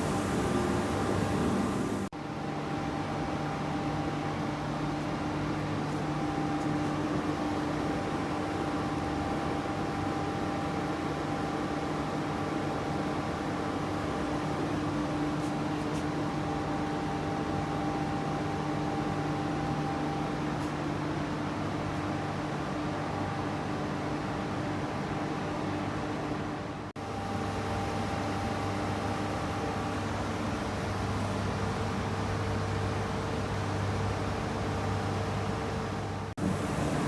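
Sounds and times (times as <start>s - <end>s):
machine motor hum: 0.0s - 2.1s.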